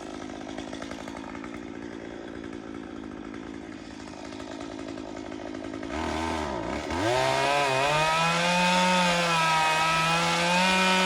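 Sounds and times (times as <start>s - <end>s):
chainsaw idling and revving: 0.0s - 11.0s.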